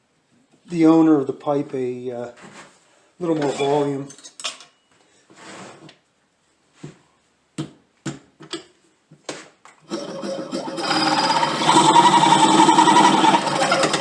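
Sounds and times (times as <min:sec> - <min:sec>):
small machine running: 0:09.9 - 0:14.0.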